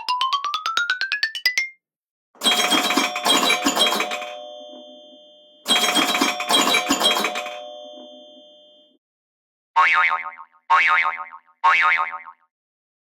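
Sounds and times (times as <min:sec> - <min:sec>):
tablet ringtone: 0:00.0 - 0:01.8, 0:02.4 - 0:08.9.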